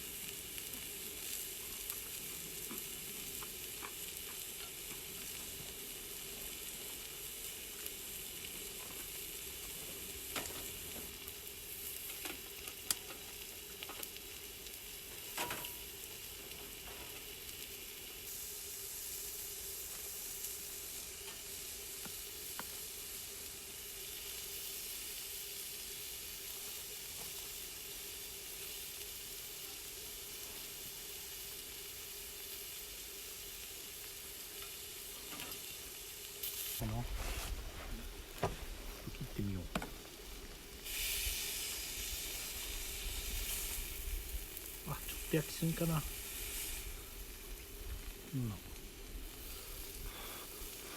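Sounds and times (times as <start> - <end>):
meat sizzling on a griddle: 0.0 - 50.9.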